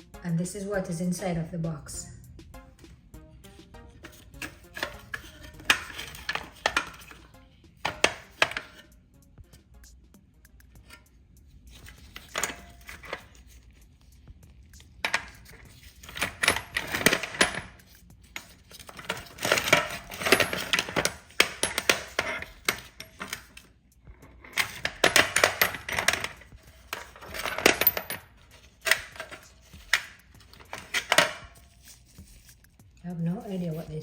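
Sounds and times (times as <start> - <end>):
hand tools clattering in toolbox: 4.0 - 8.8, 11.9 - 13.4, 15.0 - 23.7, 24.5 - 31.9.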